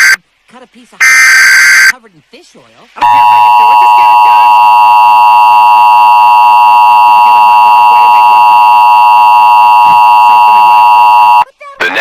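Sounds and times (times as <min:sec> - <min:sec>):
steady alarm tone: 0:01.0 - 0:01.9, 0:03.0 - 0:11.4.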